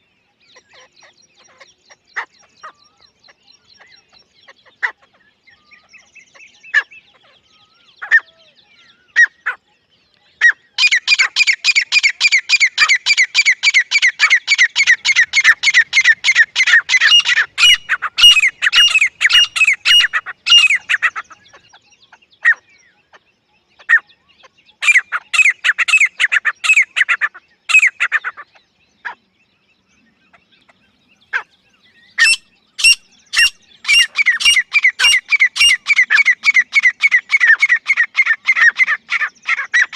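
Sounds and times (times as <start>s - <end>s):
francolin calling: 10.4s - 23.2s, 23.8s - 29.2s, 30.3s - 39.9s.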